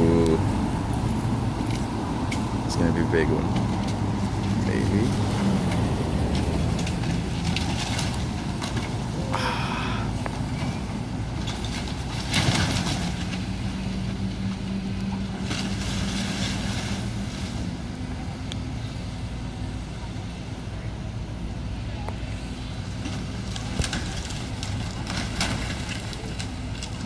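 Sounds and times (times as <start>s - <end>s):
diesel engine running: 0.0s - 27.0s
debris crashing and crunching: 3.6s - 9.6s, 10.2s - 14.6s, 23.0s - 27.0s.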